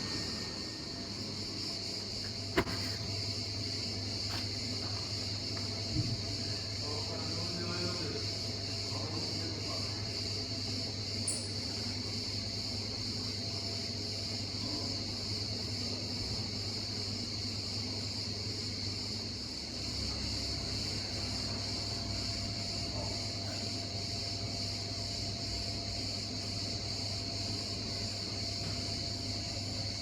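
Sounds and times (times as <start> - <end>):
high-pitched hiss: 0.0 - 10.0.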